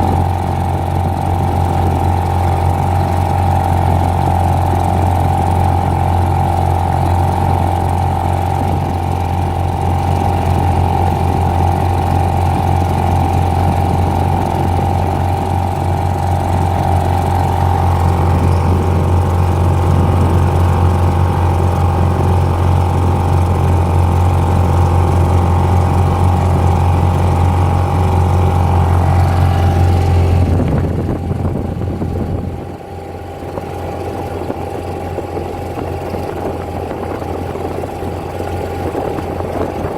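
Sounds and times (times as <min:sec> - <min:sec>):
two-stroke outboard motor running: 0:00.0 - 0:39.9.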